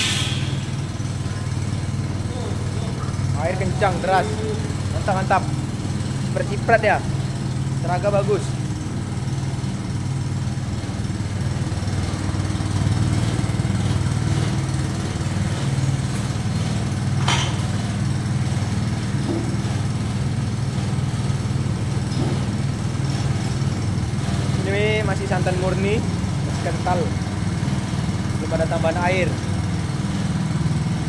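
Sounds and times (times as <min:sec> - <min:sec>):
sharp click: 0:00.0 - 0:00.9
petrol engine running under load: 0:00.0 - 0:31.0.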